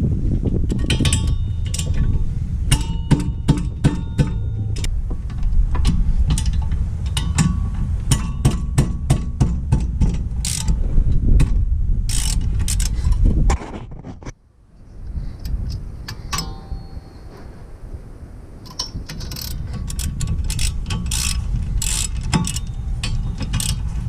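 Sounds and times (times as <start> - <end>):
steady low rumble: 0.0 - 24.0
socket ratchet clicking: 0.7 - 2.1, 9.7 - 10.8, 12.1 - 13.2, 18.7 - 24.0
metal clinks: 0.7 - 8.8, 16.2 - 17.4, 18.7 - 24.0.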